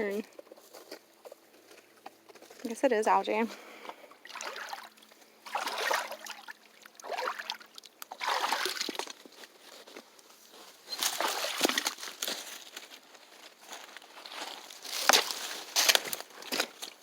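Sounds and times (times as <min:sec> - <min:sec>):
boots wading through water: 0:04.0 - 0:09.4, 0:11.0 - 0:12.5.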